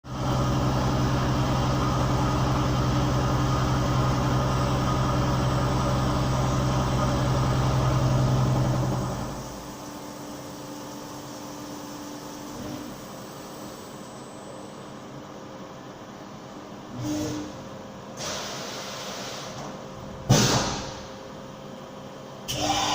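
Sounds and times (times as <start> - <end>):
machine humming with fast pulse: 0.1 - 14.8.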